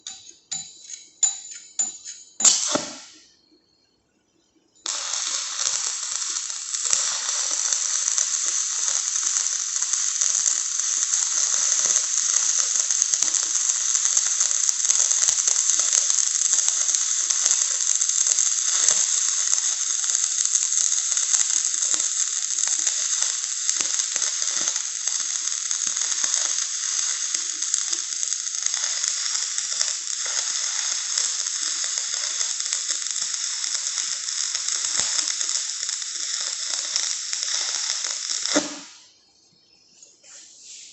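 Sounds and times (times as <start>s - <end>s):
welding arc crackling sizzle: 0.0s - 3.3s, 4.7s - 39.2s.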